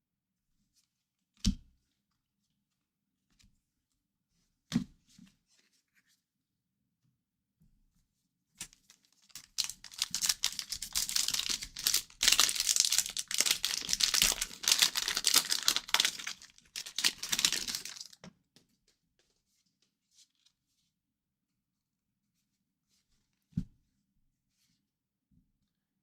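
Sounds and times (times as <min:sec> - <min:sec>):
wrapper tearing and crinkling: 0:08.6 - 0:18.2.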